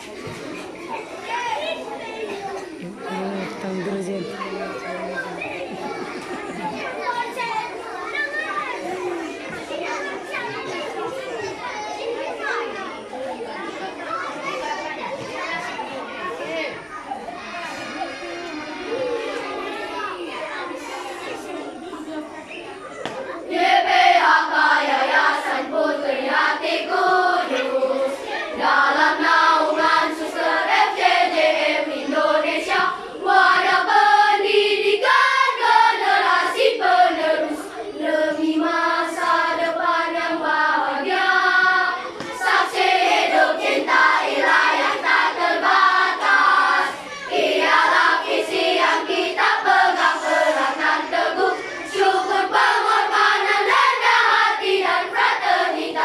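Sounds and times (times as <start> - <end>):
children's choir singing march: 23.0 - 56.0.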